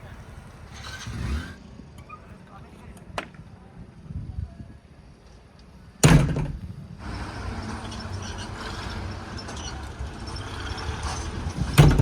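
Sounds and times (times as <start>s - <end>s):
loud metal clank: 6.0s - 6.6s, 11.7s - 12.0s
rattles: 11.1s - 12.0s.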